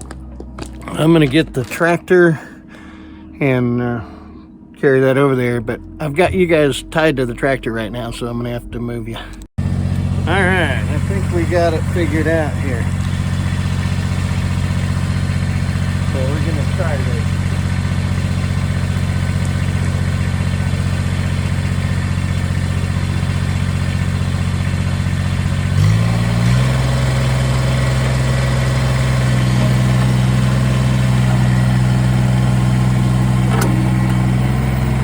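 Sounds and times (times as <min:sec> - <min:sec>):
tractor engine running and revving: 0:00.0 - 0:01.4, 0:09.6 - 0:35.0.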